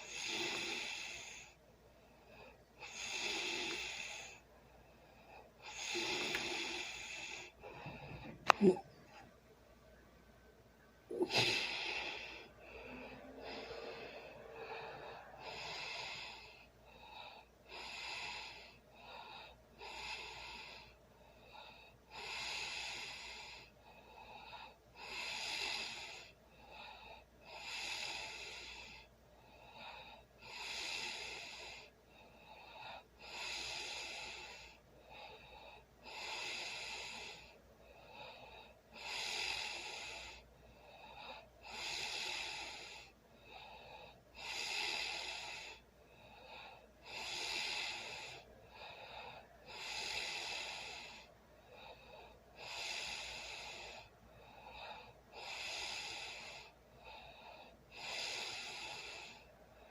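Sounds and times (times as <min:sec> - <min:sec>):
person snoring: 0:00.0 - 0:01.6, 0:02.8 - 0:04.4, 0:05.6 - 0:09.2, 0:11.1 - 0:16.7, 0:22.1 - 0:23.7, 0:25.0 - 0:26.3, 0:27.5 - 0:29.0, 0:30.4 - 0:31.9, 0:33.2 - 0:37.5, 0:39.0 - 0:40.4, 0:41.6 - 0:43.1, 0:44.4 - 0:45.8, 0:47.0 - 0:51.3, 0:52.2 - 0:54.1, 0:54.7 - 0:56.8, 0:57.9 - 0:59.5
person breathing heavily: 0:00.0 - 0:09.5, 0:10.8 - 0:59.9.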